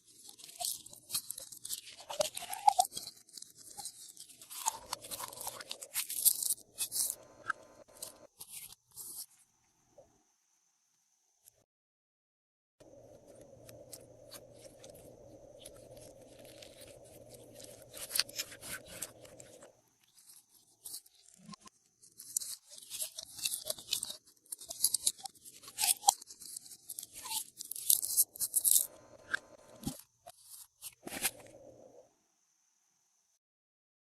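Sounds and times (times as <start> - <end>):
slime crackling and crunching: 0.1 - 9.2, 13.6 - 28.9
faint low hum: 12.8 - 20.4.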